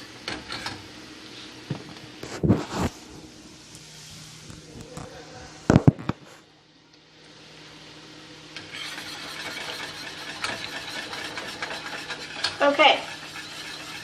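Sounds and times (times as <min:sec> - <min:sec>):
pan sizzling: 0:07.9 - 0:14.0
utensil scraping and clinking: 0:08.6 - 0:14.0.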